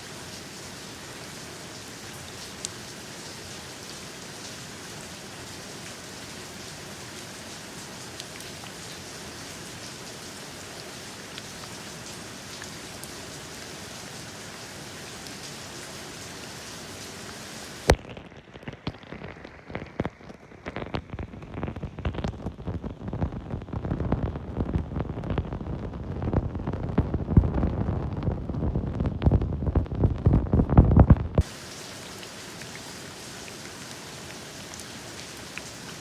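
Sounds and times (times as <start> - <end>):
steady rain hiss: 0.0 - 29.7, 31.0 - 36.0.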